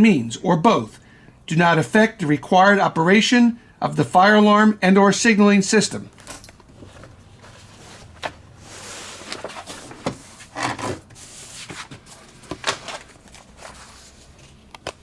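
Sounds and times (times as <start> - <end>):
papers rustling: 6.0 - 15.0.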